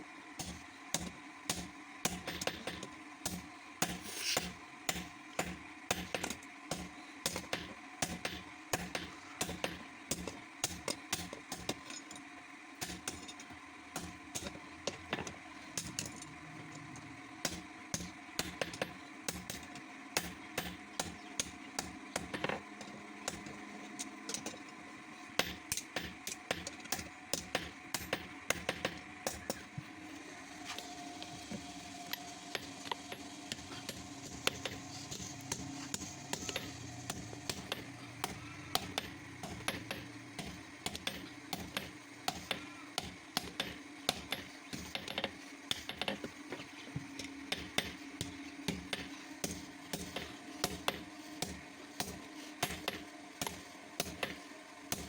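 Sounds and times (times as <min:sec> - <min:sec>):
steady hum: 0:00.0 - 0:55.0
hammer striking metal: 0:32.5 - 0:45.0.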